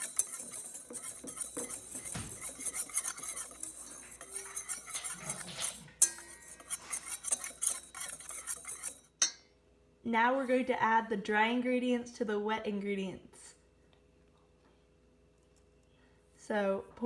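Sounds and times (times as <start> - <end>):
utensil scraping in a bowl: 0.0 - 9.2.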